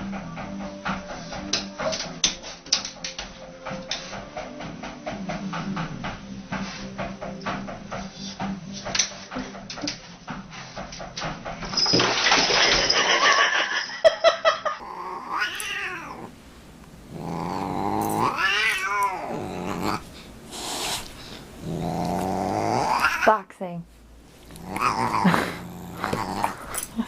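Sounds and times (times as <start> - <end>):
cat yowling: 14.8 - 16.3, 17.2 - 20.1, 21.6 - 23.4, 24.5 - 26.8.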